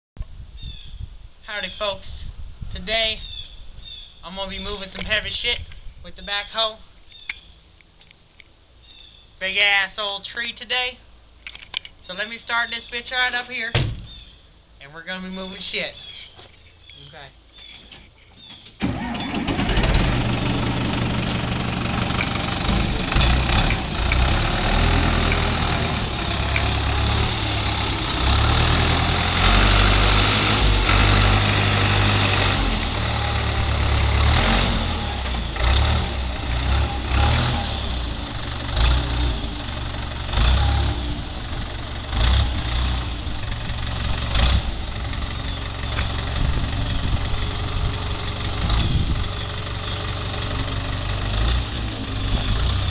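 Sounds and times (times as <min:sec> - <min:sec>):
backhoe engine running: 0:18.8 - 0:52.9.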